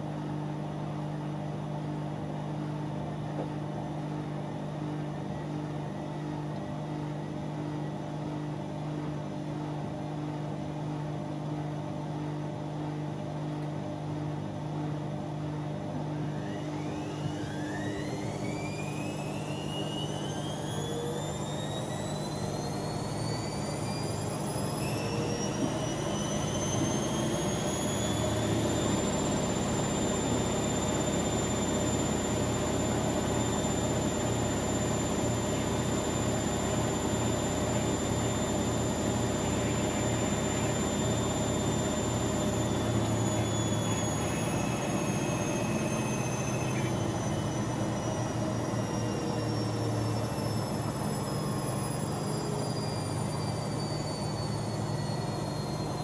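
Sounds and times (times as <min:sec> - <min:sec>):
washing machine motor whine: 0:14.4 - 0:56.0.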